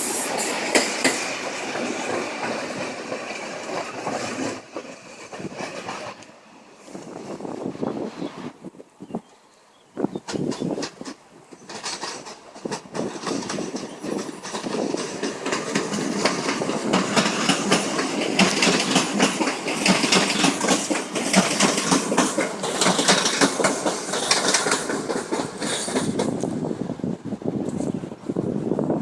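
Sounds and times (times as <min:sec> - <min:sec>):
train wheels clattering over rails: 0:00.0 - 0:07.9, 0:10.1 - 0:27.0.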